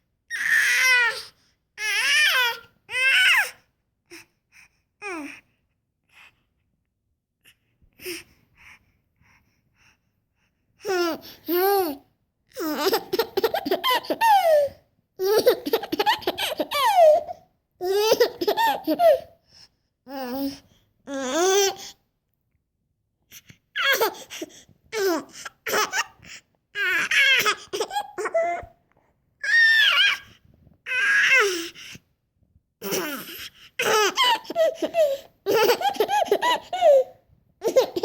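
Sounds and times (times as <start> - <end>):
baby laughing: 12.6 - 19.2, 23.8 - 24.4, 26.8 - 28.7, 32.8 - 38.0
baby squealing and babbling: 26.8 - 28.7, 29.4 - 30.3, 30.9 - 31.7, 32.8 - 38.0.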